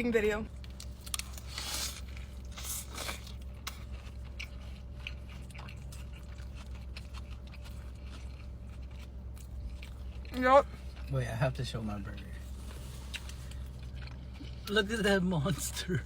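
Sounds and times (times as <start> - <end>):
crunching bites of food: 0.6 - 10.3.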